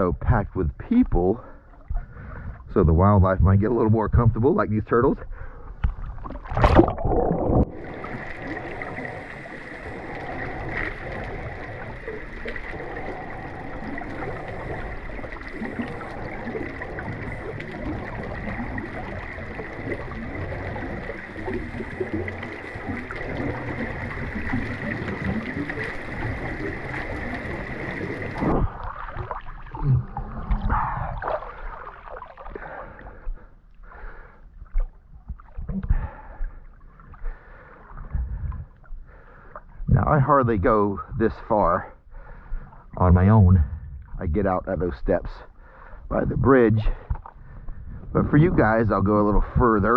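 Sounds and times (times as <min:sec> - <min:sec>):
water splashing and gurgling: 0:05.8 - 0:33.4, 0:42.6 - 0:44.7
muffled underwater hiss: 0:07.7 - 0:28.9.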